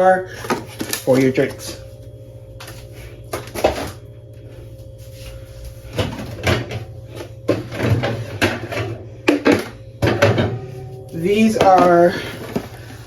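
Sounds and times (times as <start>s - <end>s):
steady low hum: 0.0s - 13.0s
containers knocking and rattling: 7.5s - 10.7s, 11.4s - 13.0s.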